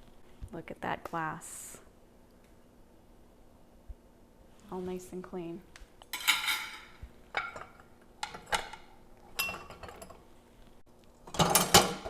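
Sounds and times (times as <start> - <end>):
glass and dishes clinking: 6.2 - 10.2.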